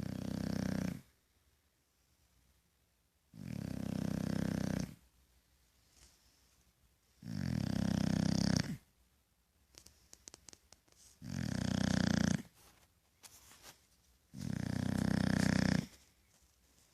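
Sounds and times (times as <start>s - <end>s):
dog snoring: 0.0s - 1.1s, 3.3s - 5.0s, 7.2s - 8.9s, 11.2s - 12.6s, 14.3s - 16.0s.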